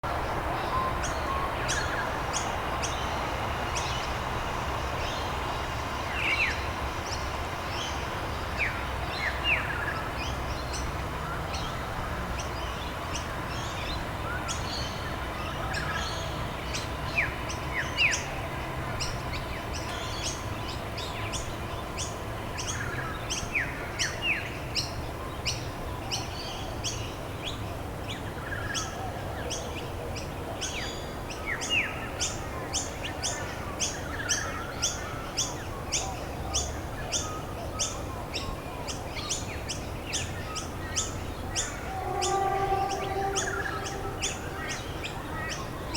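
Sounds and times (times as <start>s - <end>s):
upward-sweeping whistled notes: 41.5s - 45.9s.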